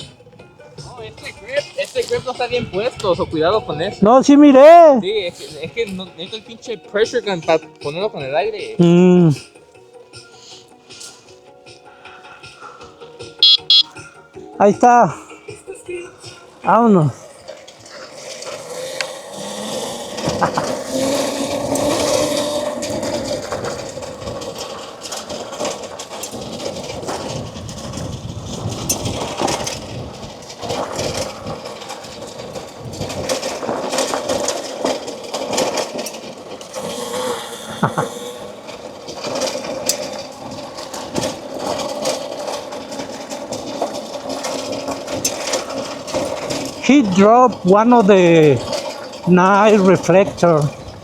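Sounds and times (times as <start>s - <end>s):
small bike engine running: 13.3s - 14.0s, 15.7s - 51.0s
bike knocks and rattles: 15.5s - 51.0s.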